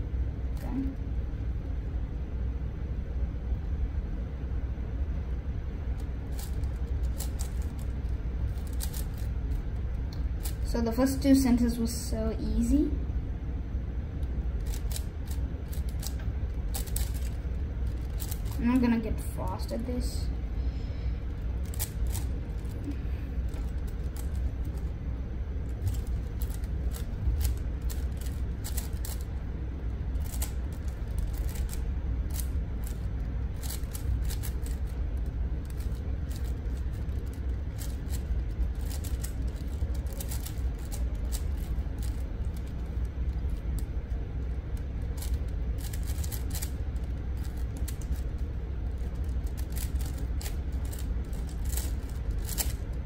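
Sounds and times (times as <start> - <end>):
steady low hum: 0.0 - 53.0
puzzle cube clicking and scraping: 6.0 - 9.7, 14.6 - 18.6, 21.3 - 24.9, 25.6 - 29.4, 30.1 - 53.0.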